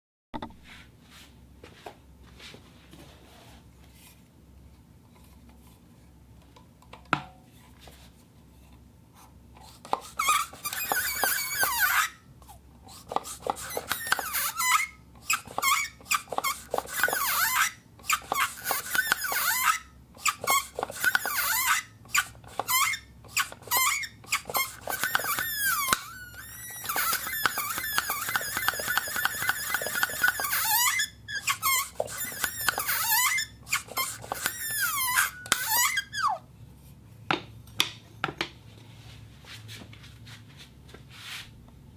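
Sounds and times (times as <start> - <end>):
suction cup squeaking: 9.7 - 12.2, 12.9 - 36.4.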